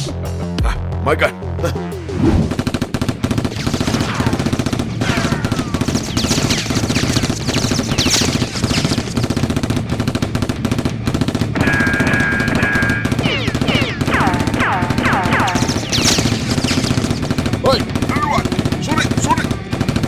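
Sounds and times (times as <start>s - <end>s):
automatic gunfire: 2.5s - 20.0s.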